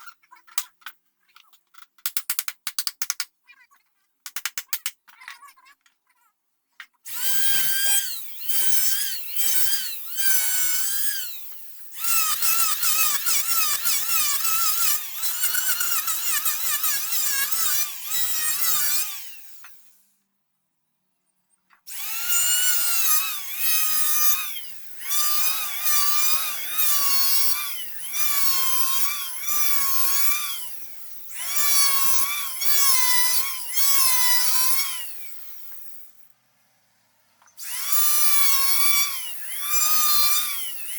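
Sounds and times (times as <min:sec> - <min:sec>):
electric drill whining into wood: 0:07.1 - 0:20.1, 0:21.9 - 0:40.9.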